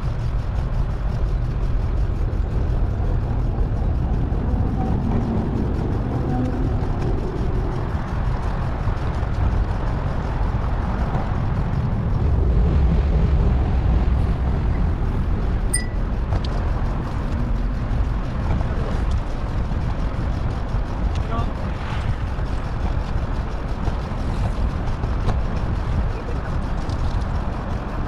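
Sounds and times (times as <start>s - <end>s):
wind buffeting microphone: 0.0s - 28.0s
road noise: 2.2s - 28.0s
high chirp: 15.7s - 16.0s.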